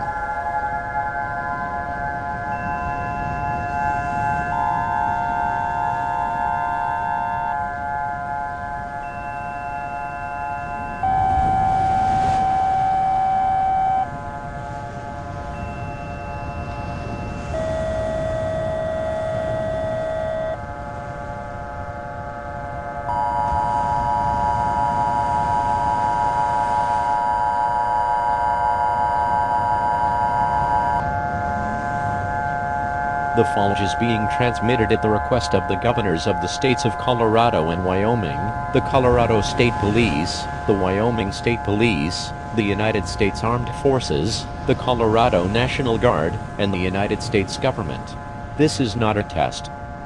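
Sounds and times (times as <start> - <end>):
louder held alert tone: 9.0 - 14.2, 15.6 - 20.6, 23.1 - 31.0
electronic alert tone drone: 9.1 - 14.1, 15.6 - 20.6, 23.1 - 31.1
bright tone chord: 23.1 - 31.0.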